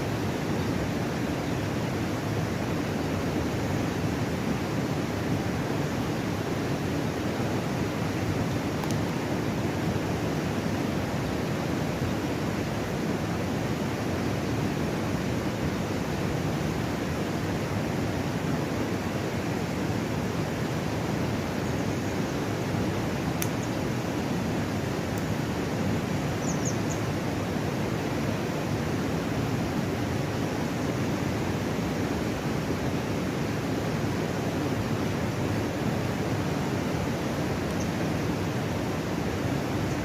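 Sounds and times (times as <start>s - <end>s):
river rapids rushing: 0.0s - 40.0s
faint high chirps: 26.4s - 27.0s.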